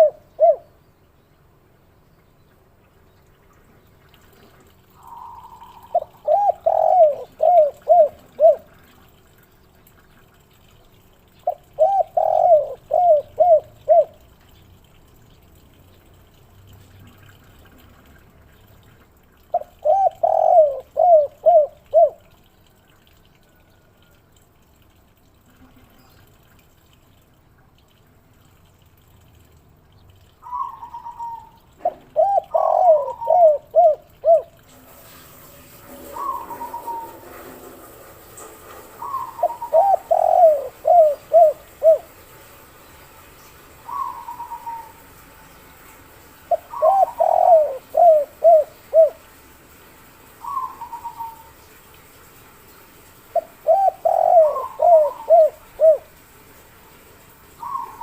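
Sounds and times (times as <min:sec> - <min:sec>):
dove cooing: 0:00.0 - 0:00.7, 0:05.0 - 0:08.9, 0:11.4 - 0:14.2, 0:19.5 - 0:22.3, 0:30.4 - 0:34.6, 0:35.9 - 0:37.6, 0:39.0 - 0:42.2, 0:43.8 - 0:45.0, 0:46.5 - 0:49.2, 0:50.4 - 0:51.5, 0:53.3 - 0:56.2, 0:57.6 - 0:58.0.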